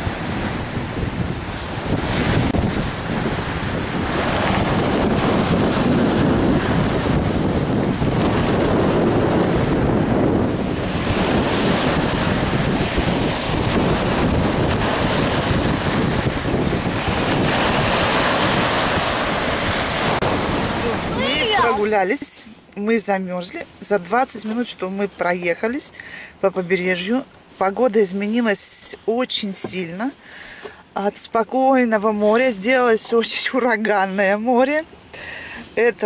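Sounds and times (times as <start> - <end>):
wind buffeting microphone: 0.0 - 22.0
surf breaking on beach: 0.0 - 22.4.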